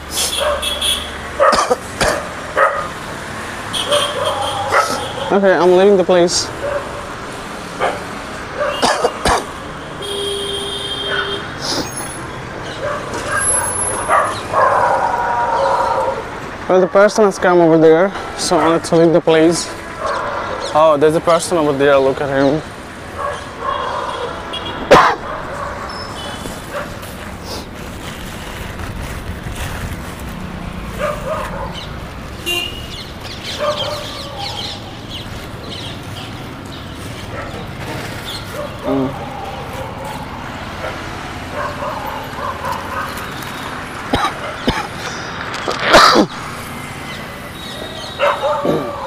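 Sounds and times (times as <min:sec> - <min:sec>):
outdoor background noise: 0:00.0 - 0:49.0
dog barking: 0:00.3 - 0:03.0, 0:03.8 - 0:05.4, 0:06.5 - 0:09.5, 0:11.0 - 0:11.4, 0:12.6 - 0:16.3, 0:20.0 - 0:20.8, 0:23.1 - 0:27.0, 0:30.9 - 0:31.9, 0:33.4 - 0:35.0, 0:37.2 - 0:37.7, 0:38.5 - 0:43.3, 0:44.1 - 0:44.9, 0:45.9 - 0:46.3, 0:47.9 - 0:49.0.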